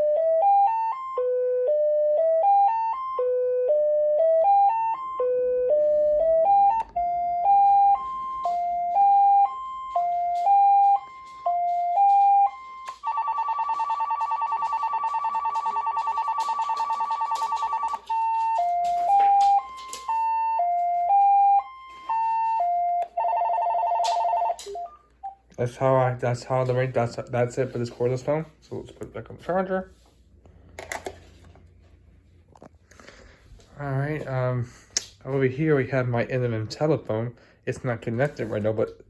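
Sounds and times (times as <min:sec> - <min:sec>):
beeping phone ringtone melody: 0:00.0 - 0:25.4.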